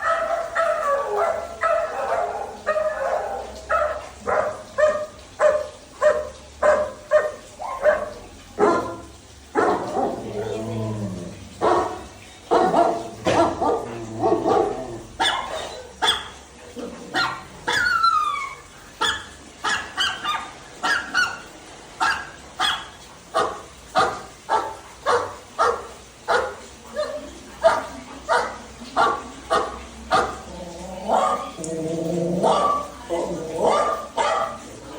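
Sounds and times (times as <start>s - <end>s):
dog yelping: 0.0s - 8.9s, 11.6s - 16.4s, 17.1s - 30.4s, 33.6s - 34.7s
dog barking: 0.0s - 10.6s, 11.6s - 16.4s, 17.1s - 18.2s, 19.0s - 30.4s, 31.1s - 31.6s, 32.4s - 33.0s, 33.6s - 34.8s.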